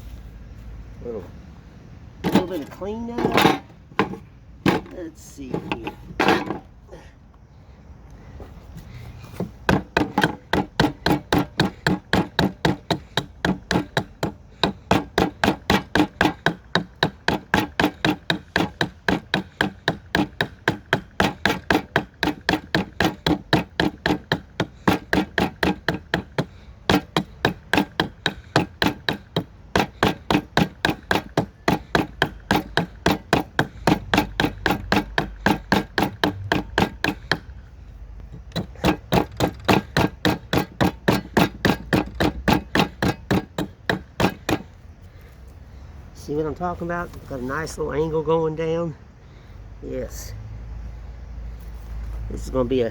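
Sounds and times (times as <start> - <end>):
hatchet chopping wood: 2.2 - 6.7, 9.4 - 37.6, 38.2 - 44.8.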